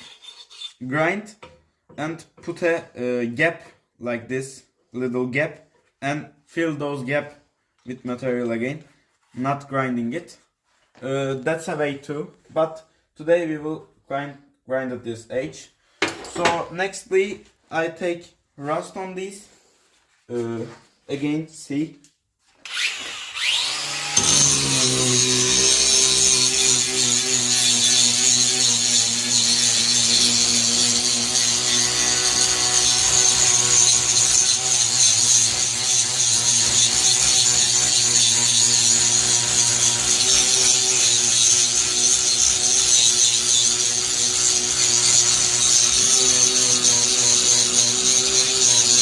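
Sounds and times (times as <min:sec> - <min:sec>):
power tool grinding metal: 0:00.0 - 0:00.9, 0:22.6 - 0:49.0.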